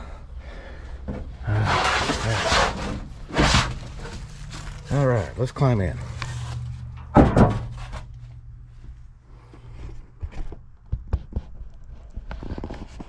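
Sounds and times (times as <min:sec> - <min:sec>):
loud thump: 0:07.0 - 0:08.1.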